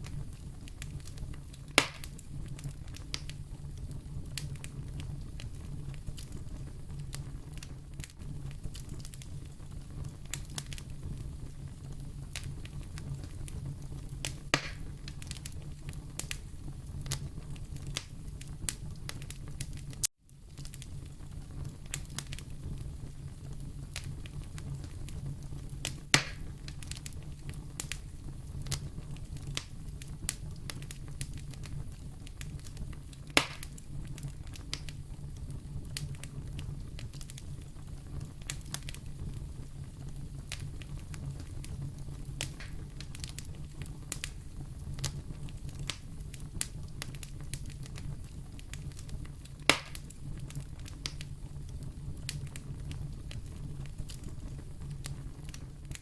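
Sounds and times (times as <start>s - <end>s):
fire crackling: 0.0s - 56.0s
fire popping: 0.0s - 56.0s
fire rumbling in fireplace: 0.0s - 56.0s.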